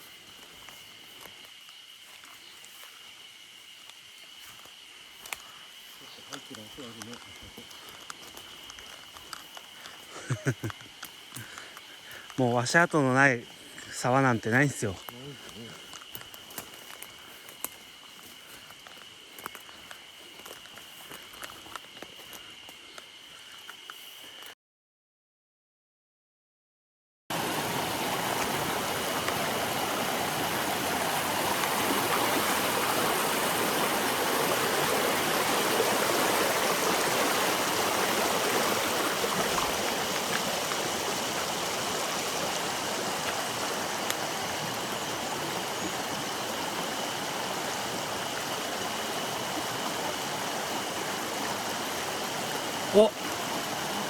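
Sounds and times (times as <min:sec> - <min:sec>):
stream rushing over rocks: 0:27.3 - 0:54.0.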